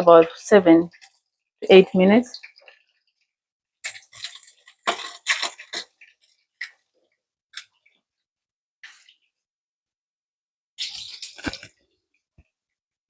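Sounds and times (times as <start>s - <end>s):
chicken frying in oil: 0.0s - 3.2s, 3.8s - 6.9s, 10.8s - 12.0s.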